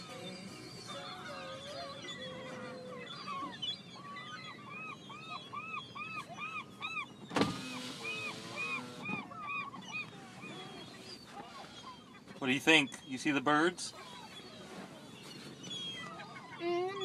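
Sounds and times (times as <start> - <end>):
gulls crying: 0.0 - 17.0
gull giving rapid calls: 0.9 - 10.7.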